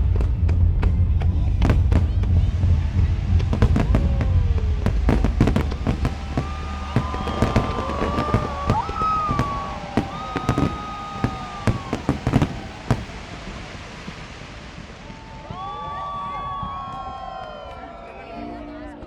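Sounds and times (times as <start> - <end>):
long held tones: 0.0 - 13.2
fireworks bangs and crackles: 0.0 - 17.5.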